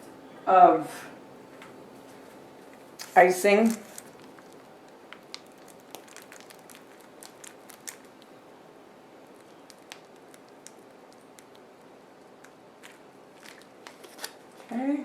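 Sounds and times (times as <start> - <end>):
low room hum: 0.0 - 15.0
spackle scooping clicks and scrapes: 12.4 - 14.4.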